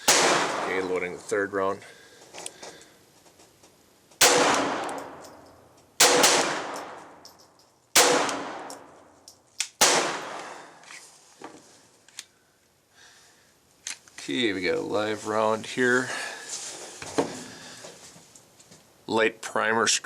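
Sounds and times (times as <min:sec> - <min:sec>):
echoing gunshots: 0:00.0 - 0:01.2, 0:04.2 - 0:05.4, 0:06.0 - 0:07.2, 0:08.0 - 0:09.0, 0:09.8 - 0:10.8
small metallic clicks: 0:04.8 - 0:05.9, 0:06.7 - 0:07.9, 0:08.6 - 0:09.8.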